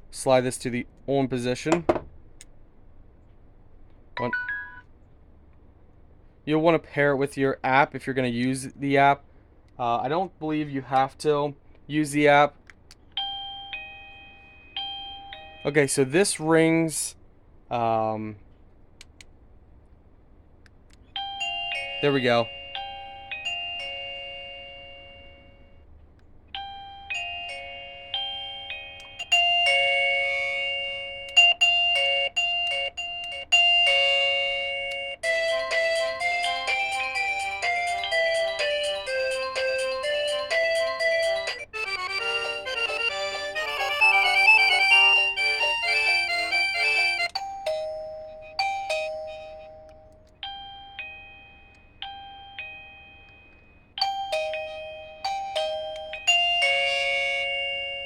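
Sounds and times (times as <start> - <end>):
doorbell chime ringtones: 13.2 - 15.9, 21.2 - 25.8, 26.6 - 58.0.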